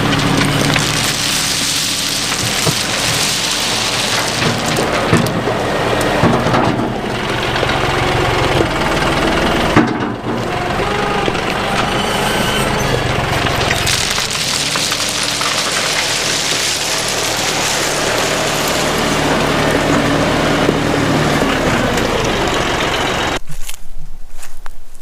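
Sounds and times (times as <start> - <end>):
loose rock rattling and crunching: 0.0 - 11.9, 12.8 - 25.0
tractor engine running: 0.0 - 23.8
stones knocking: 0.2 - 6.4, 13.4 - 20.8.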